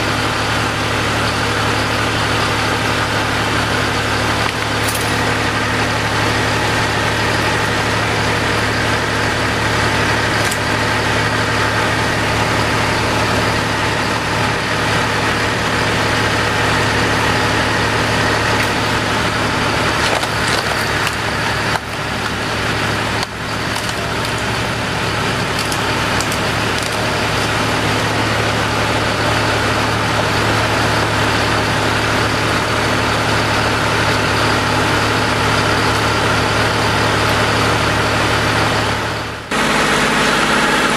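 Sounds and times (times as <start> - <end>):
tractor engine running: 0.0 - 40.9
wood splitting cracks: 4.4 - 5.2, 10.3 - 10.8, 18.6 - 28.0.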